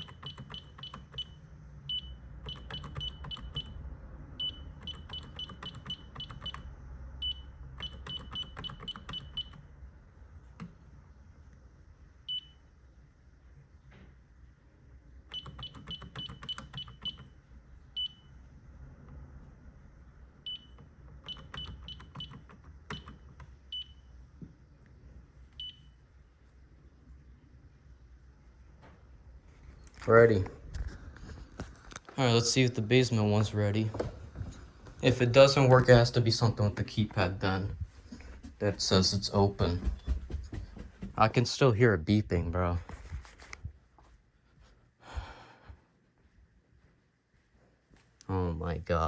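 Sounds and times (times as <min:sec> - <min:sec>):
alarm keypads beeping: 0:00.0 - 0:09.6, 0:12.3 - 0:12.6, 0:15.3 - 0:17.3, 0:20.5 - 0:23.1, 0:25.6 - 0:25.9.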